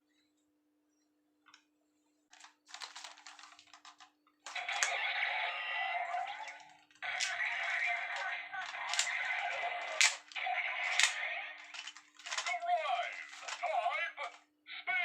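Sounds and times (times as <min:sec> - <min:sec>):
plastic toy clicks and clattering: 0:02.4 - 0:05.0, 0:06.1 - 0:14.4
electronic toy sound effect: 0:04.5 - 0:13.9.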